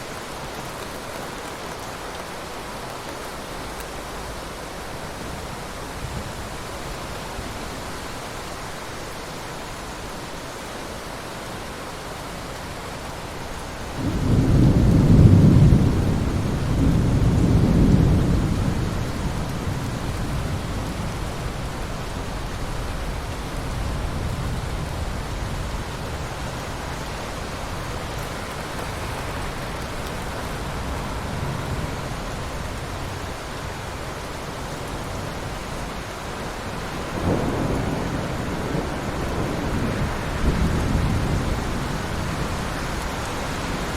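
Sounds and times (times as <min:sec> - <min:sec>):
heavy rain falling: 0:00.0 - 0:43.9
thunder rumbling: 0:13.9 - 0:33.2, 0:36.7 - 0:43.9.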